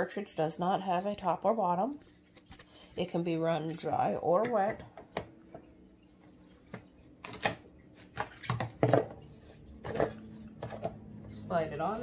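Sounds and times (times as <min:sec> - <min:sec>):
plastic parts knocking and clicking: 0:07.3 - 0:09.2.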